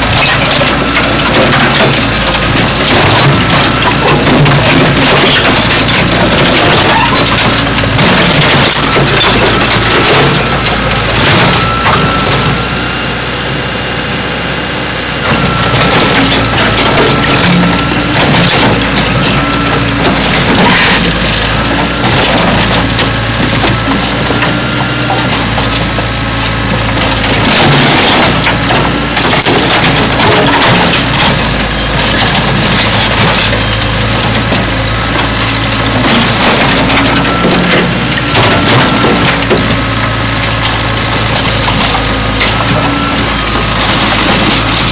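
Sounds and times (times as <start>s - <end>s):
diesel engine running: 0.0s - 44.9s
short squeals: 3.2s - 12.8s.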